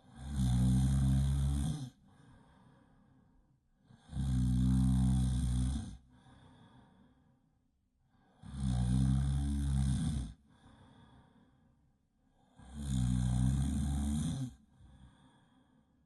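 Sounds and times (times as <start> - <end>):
loud buzzing snore: 0.1 - 2.0, 4.0 - 6.0, 8.4 - 10.4, 12.6 - 14.6
soft breath: 2.0 - 3.5, 6.1 - 7.5, 10.4 - 12.5, 14.6 - 16.0.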